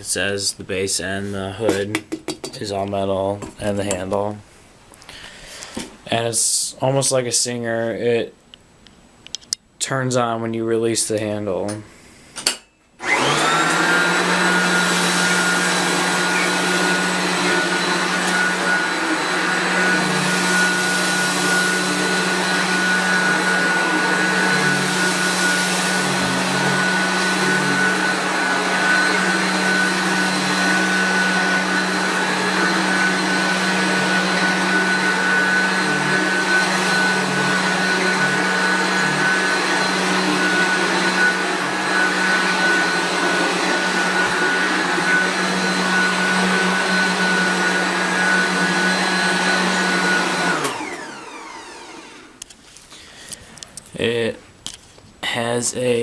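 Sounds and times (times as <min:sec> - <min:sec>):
vacuum cleaner motor whining: 0:13.0 - 0:52.5.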